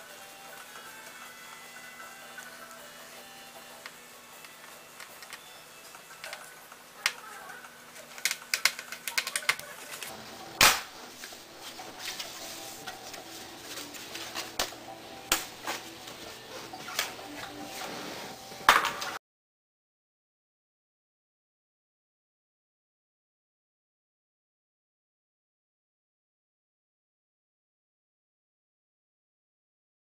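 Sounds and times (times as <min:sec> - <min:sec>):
laptop parts clicking and knocking: 0:08.0 - 0:10.1.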